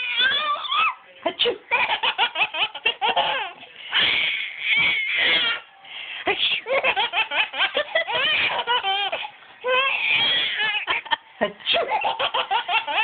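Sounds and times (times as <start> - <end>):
baby squealing: 0.0 - 1.0, 1.8 - 5.6, 9.7 - 10.8
baby laughing: 1.7 - 5.6, 6.6 - 13.0.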